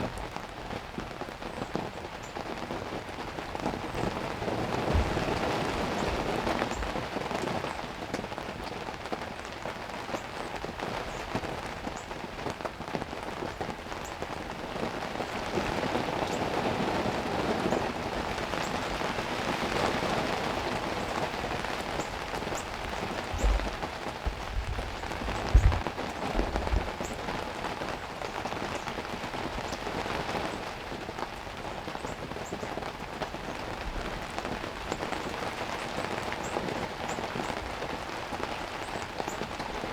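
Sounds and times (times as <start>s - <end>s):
heavy rain pouring: 0.0s - 39.9s
short low thumps: 23.4s - 26.8s.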